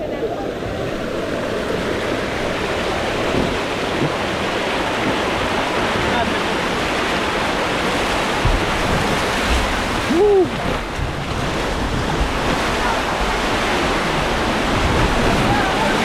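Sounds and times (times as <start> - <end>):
water rushing down slide: 0.0 - 16.0
wind noise on microphone: 6.8 - 16.0
person yelling: 10.1 - 10.6.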